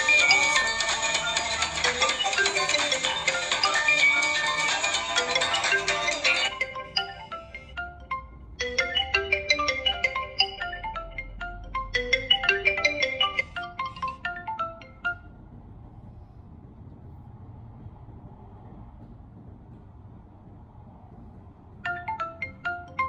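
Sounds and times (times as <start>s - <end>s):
phone ringtone melody: 0.0s - 15.4s, 21.9s - 23.0s.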